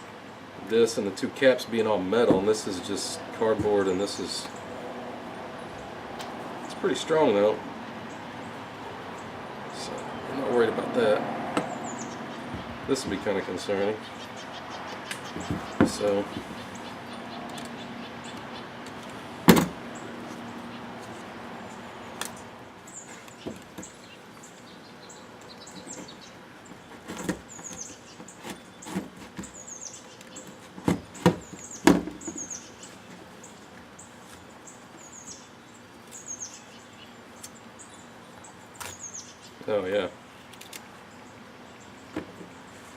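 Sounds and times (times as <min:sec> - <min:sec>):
bird chirping: 0:11.6 - 0:19.0, 0:19.9 - 0:39.6
knocks and clicks of handling tools: 0:15.0 - 0:16.6, 0:18.8 - 0:19.8.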